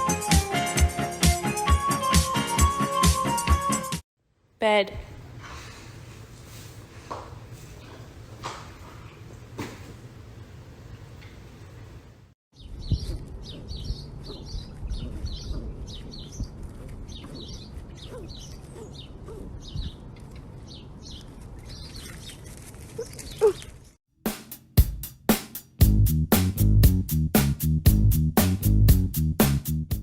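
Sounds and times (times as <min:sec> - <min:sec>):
small bird chirping: 0:12.6 - 0:23.8.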